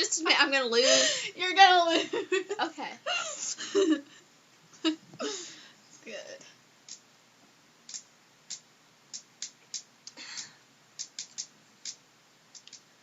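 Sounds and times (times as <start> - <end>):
faint sharp clicks: 7.9 - 12.8.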